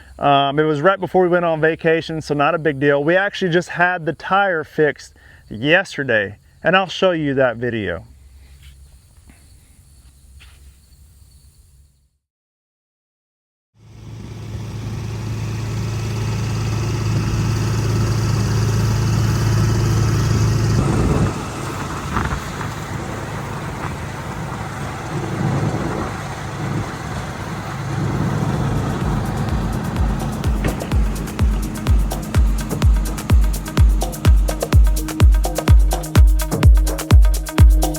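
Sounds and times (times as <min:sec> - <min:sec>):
engine running with low hum: 0:00.0 - 0:03.6, 0:13.8 - 0:37.9.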